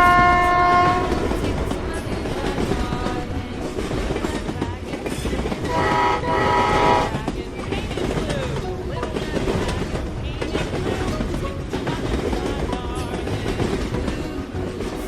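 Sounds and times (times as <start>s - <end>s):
train horn blasts: 0.0s - 2.1s, 5.6s - 7.2s
train rumble and rail clatter: 0.0s - 15.0s.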